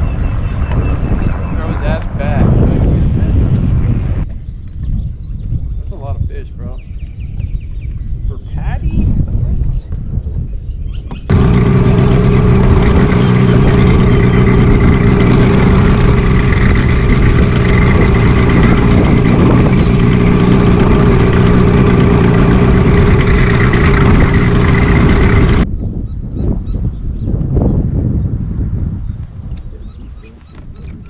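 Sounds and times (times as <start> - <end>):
outboard motor running: 11.3 - 25.6.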